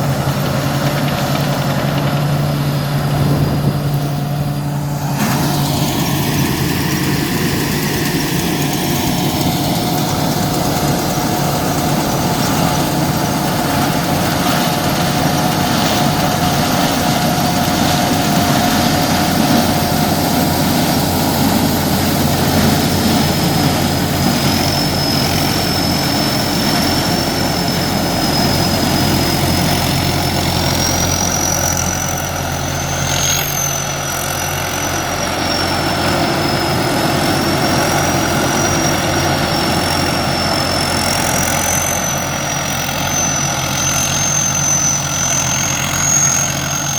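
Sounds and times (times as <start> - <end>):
corn sheller machine running: 0.0 - 46.9
thin machine whine: 0.0 - 46.9.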